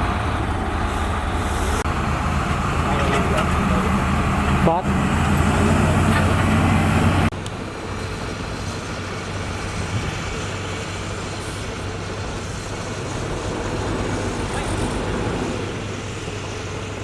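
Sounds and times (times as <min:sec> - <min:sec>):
heavy machinery diesel engine running: 0:00.0 - 0:17.0.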